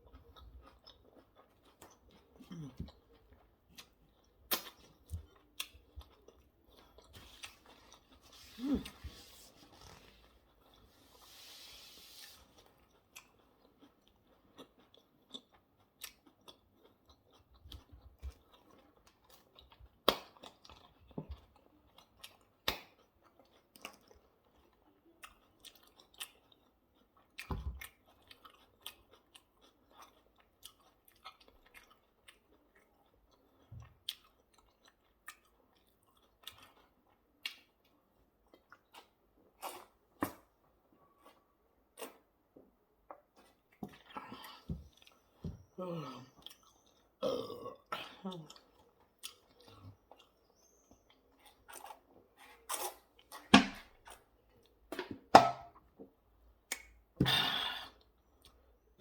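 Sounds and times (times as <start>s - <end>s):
chewing food: 0.0s - 11.3s, 12.4s - 54.9s
wet mouth clicks: 56.7s - 57.0s.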